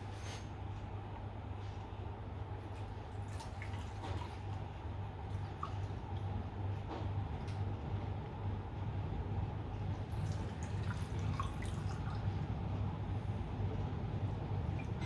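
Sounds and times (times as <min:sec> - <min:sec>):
steady low hum: 0:00.0 - 0:15.0
petrol trickling and dripping: 0:10.0 - 0:12.5.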